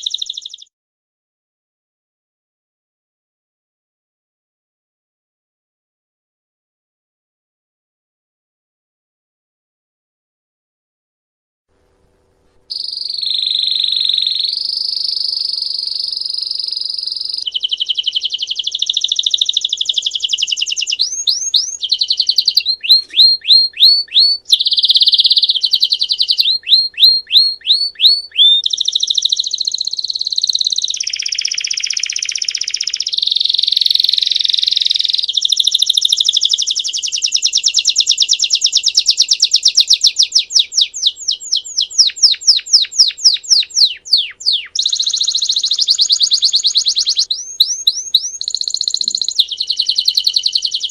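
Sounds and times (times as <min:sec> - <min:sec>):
canary singing trills: 0:00.0 - 0:00.7, 0:12.7 - 0:50.9.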